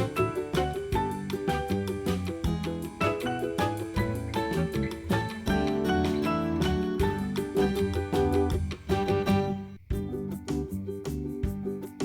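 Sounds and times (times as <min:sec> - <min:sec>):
plucked guitar music with beat: 0:00.0 - 0:12.0.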